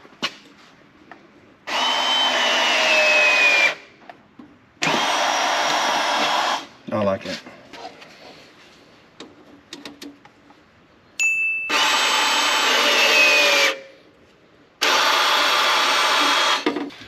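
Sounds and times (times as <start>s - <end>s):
crimping tool motor running: 14.8s - 16.7s.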